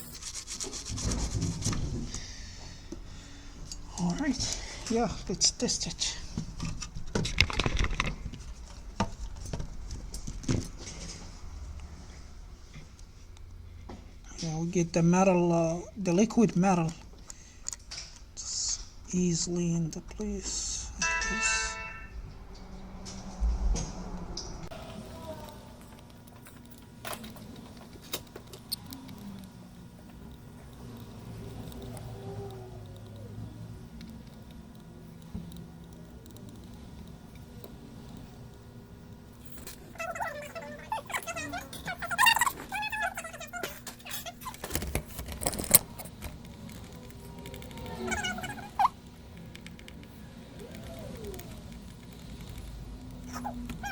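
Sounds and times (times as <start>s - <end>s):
light scratching: 0.0s - 2.1s
small parts and tools clattering: 6.6s - 11.1s
small parts clicking: 25.1s - 53.9s.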